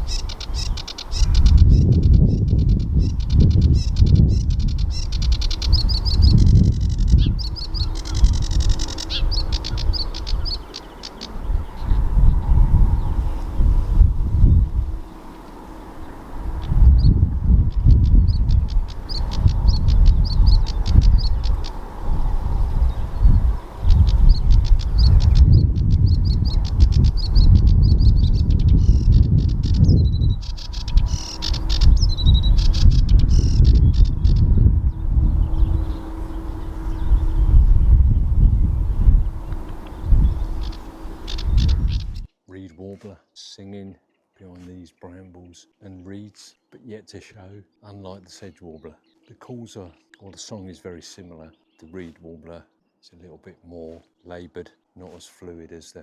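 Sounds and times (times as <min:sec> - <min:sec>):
bird singing chattering trills: 0:00.0 - 0:54.9
loud low rumble: 0:01.2 - 0:10.6, 0:11.4 - 0:42.3.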